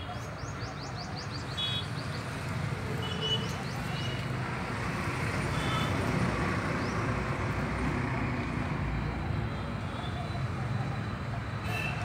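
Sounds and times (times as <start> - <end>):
road traffic hum: 0.0 - 12.0.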